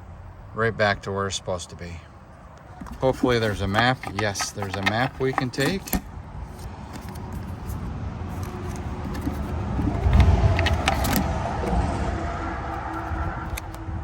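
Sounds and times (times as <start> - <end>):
car passing: 7.7 - 14.0.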